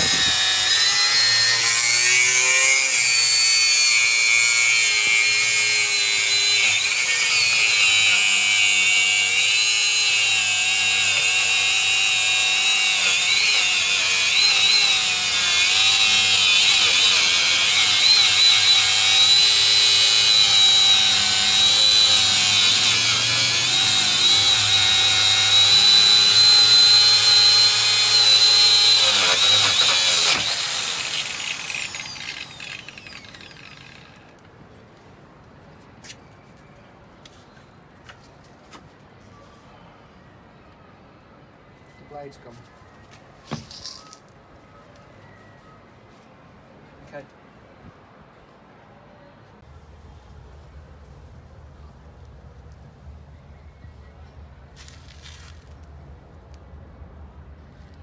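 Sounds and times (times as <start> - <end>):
angle grinder cutting metal: 0.0 - 34.3.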